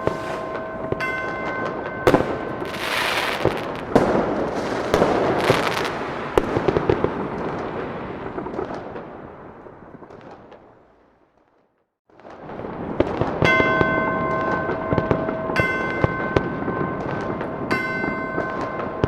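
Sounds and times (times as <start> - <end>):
clock bell striking: 0.0 - 3.8, 13.5 - 19.0
fireworks crackling: 0.0 - 19.0
fireworks exploding: 0.0 - 19.0.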